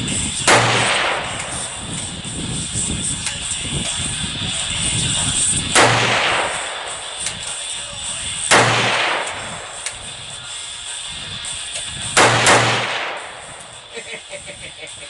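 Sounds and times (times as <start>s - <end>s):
rifle single shots with echo: 0.4s - 1.8s, 5.7s - 7.6s, 8.4s - 10.1s, 12.1s - 13.8s.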